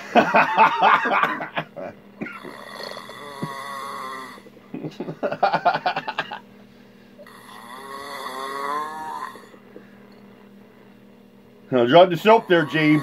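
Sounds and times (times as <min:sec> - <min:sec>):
man snoring: 0:01.8 - 0:06.4, 0:07.2 - 0:09.8, 0:11.8 - 0:13.0.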